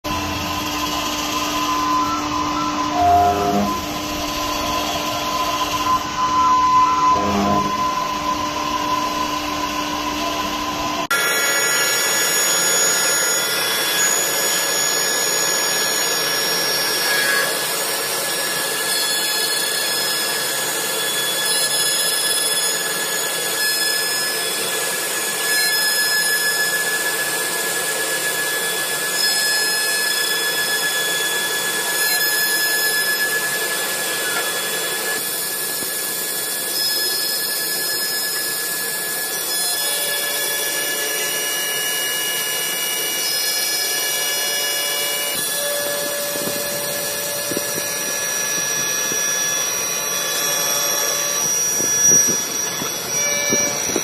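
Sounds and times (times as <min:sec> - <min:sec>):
wood lathe machining wood: 0:00.1 - 0:54.0.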